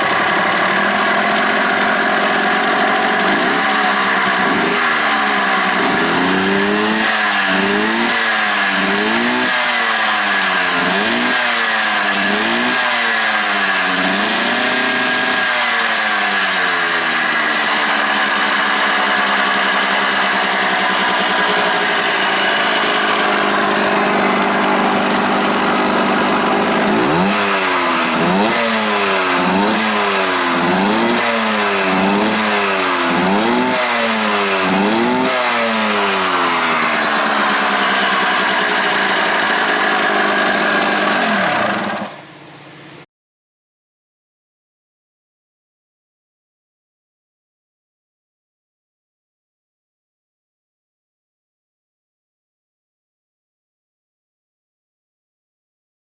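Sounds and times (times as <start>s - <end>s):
engine idling: 0.0s - 43.0s
two-stroke engine revving: 0.0s - 43.0s.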